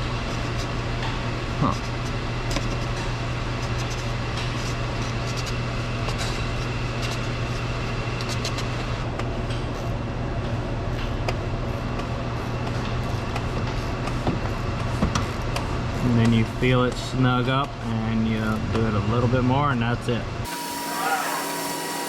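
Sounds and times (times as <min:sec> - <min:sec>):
low mechanical hum: 0:00.0 - 0:22.0
faint high whine: 0:20.5 - 0:22.0.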